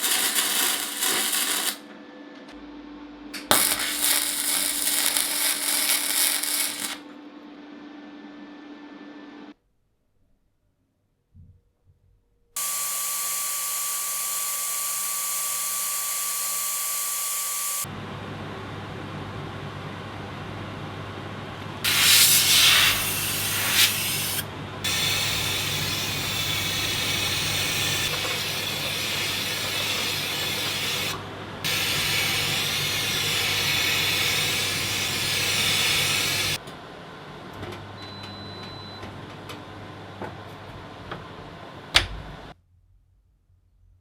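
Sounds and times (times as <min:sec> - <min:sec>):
compressed air hissing: 0:00.0 - 0:01.8, 0:03.5 - 0:07.0, 0:21.9 - 0:36.6
machine hum: 0:00.0 - 0:09.6.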